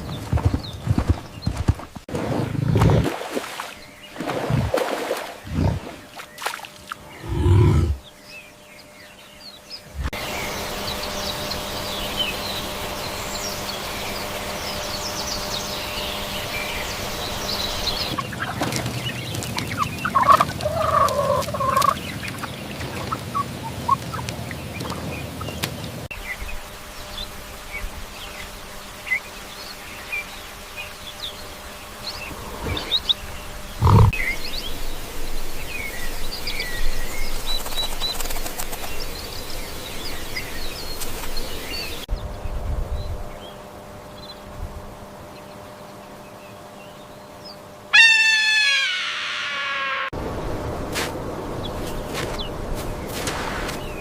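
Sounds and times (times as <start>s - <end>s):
small birds chirping: 0.0s - 2.0s, 5.4s - 44.5s, 51.5s - 54.0s
turkey gobbling: 19.8s - 24.2s
short low animal calls: 33.8s - 34.2s, 48.0s - 50.1s.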